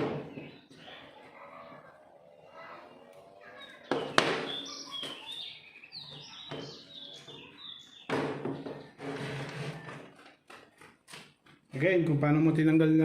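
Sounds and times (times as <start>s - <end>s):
small birds chirping: 0.0s - 9.0s.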